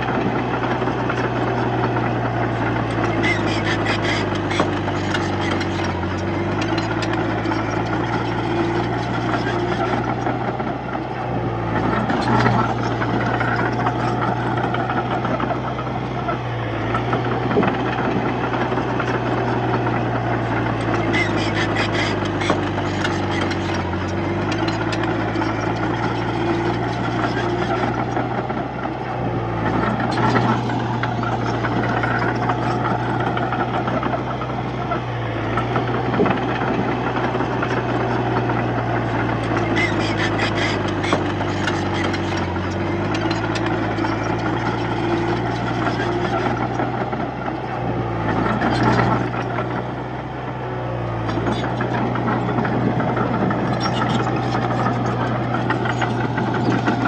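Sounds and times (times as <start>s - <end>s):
bulldozer diesel engine running: 0.0s - 57.0s
clattering ticks: 20.6s - 28.6s, 35.6s - 47.0s, 51.3s - 57.0s.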